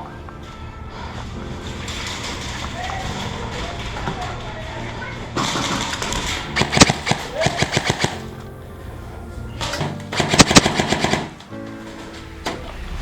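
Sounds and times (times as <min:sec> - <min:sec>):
airsoft gun bursts: 0:05.4 - 0:08.4, 0:09.6 - 0:11.4.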